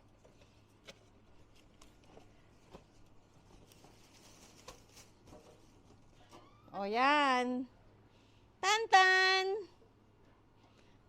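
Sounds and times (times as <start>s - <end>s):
soft rustle: 0.2s - 5.9s.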